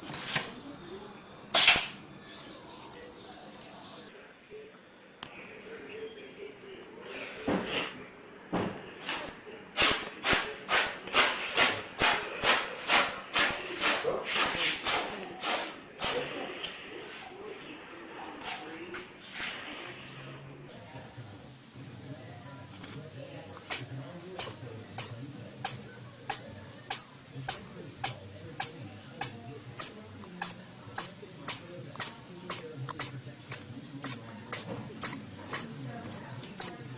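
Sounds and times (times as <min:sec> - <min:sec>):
cat sneezing: 0:23.7 - 0:36.8.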